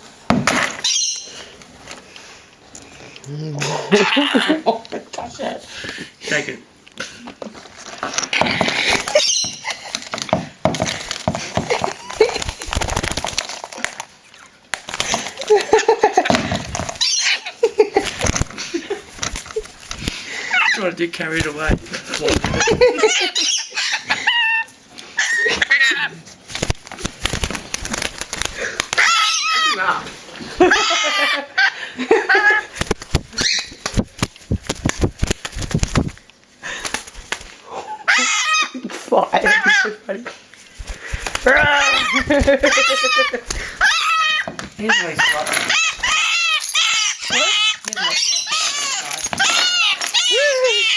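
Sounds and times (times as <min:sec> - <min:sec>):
parrot chattering and calling: 0:00.8 - 0:01.4, 0:03.8 - 0:04.8, 0:08.8 - 0:10.0, 0:17.0 - 0:18.8, 0:19.5 - 0:20.9, 0:22.4 - 0:26.2, 0:28.6 - 0:30.0, 0:30.6 - 0:33.8, 0:37.9 - 0:40.1, 0:41.4 - 0:50.9
person laughing: 0:03.5 - 0:05.2, 0:11.4 - 0:12.8, 0:15.2 - 0:16.7, 0:17.5 - 0:19.7, 0:22.2 - 0:23.5, 0:30.4 - 0:32.9, 0:41.5 - 0:43.8.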